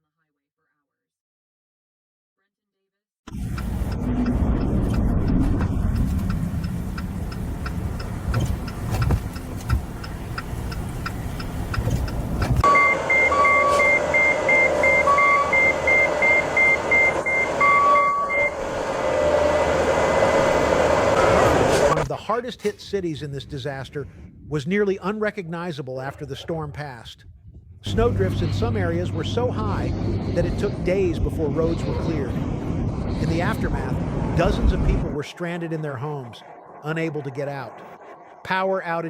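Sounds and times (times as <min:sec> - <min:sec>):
vehicle engine rumbling: 0:03.3 - 0:22.1, 0:27.8 - 0:38.5
faint regular ticking: 0:04.9 - 0:12.6
longer lower beeps: 0:12.6 - 0:18.6
rapid electronic warning beep: 0:12.6 - 0:18.6.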